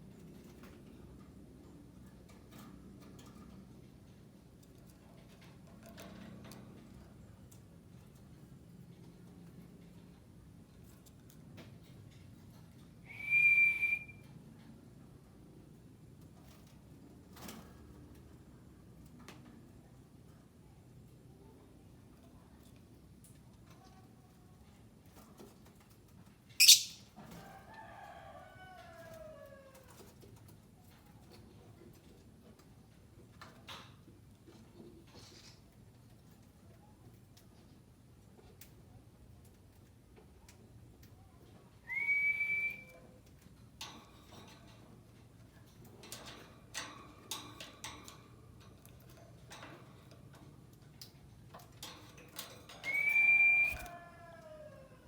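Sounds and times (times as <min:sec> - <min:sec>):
lovebird chirping: 0:26.6 - 0:27.0
shrill bird call: 0:26.6 - 0:27.0, 0:52.9 - 0:53.9
shrill bird screech: 0:26.6 - 0:27.0
rooster crowing: 0:52.9 - 0:55.0.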